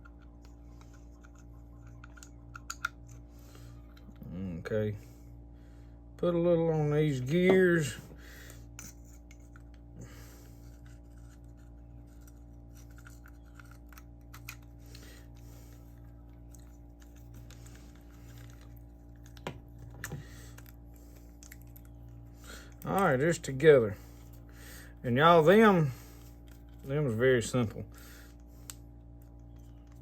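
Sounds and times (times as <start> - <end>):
small clicks and scrapes of reel: 0.0 - 4.1, 10.5 - 19.4
steady low hum: 0.0 - 30.0.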